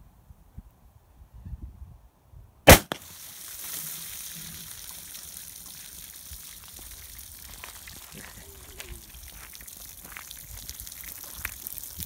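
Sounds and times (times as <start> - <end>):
revolver shot: 2.7 - 3.1.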